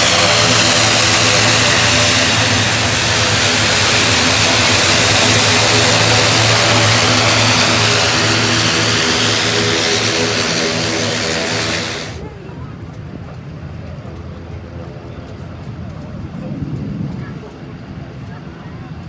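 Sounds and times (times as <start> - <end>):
aircraft engine running: 0.0 - 12.2.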